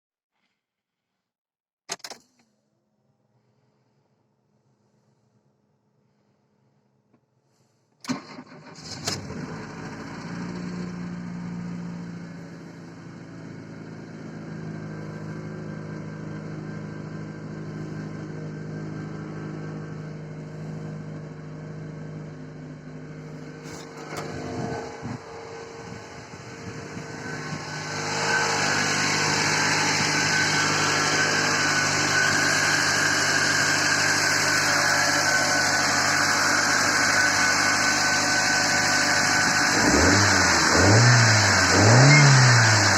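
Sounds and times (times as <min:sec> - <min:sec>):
car engine idling: 0:08.1 - 0:42.9.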